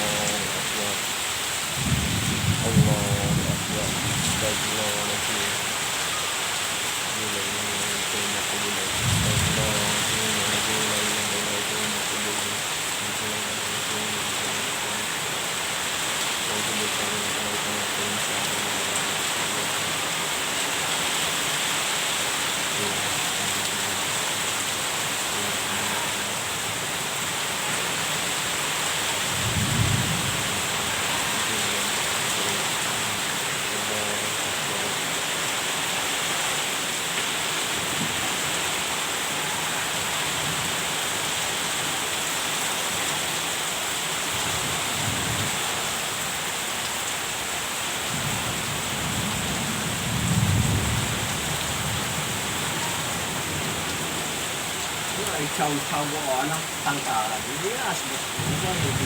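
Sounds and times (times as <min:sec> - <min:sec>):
heavy rain pouring: 0:00.0 - 0:59.0
thunder rumbling: 0:01.7 - 0:05.8, 0:07.6 - 0:12.6, 0:29.3 - 0:33.3, 0:48.1 - 0:59.0.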